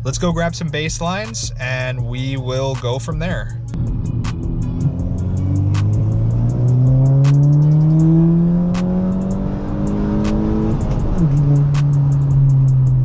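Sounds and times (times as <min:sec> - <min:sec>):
background music with sharp beat: 0:00.0 - 0:13.0
car engine revving: 0:03.7 - 0:13.0.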